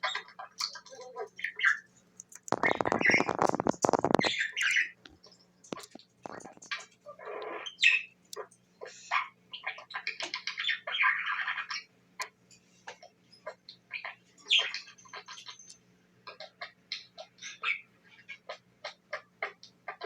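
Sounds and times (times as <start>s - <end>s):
budgerigar chirping and chattering: 0.0s - 5.0s, 5.7s - 12.3s, 12.9s - 20.0s
small clicks: 2.2s - 6.8s.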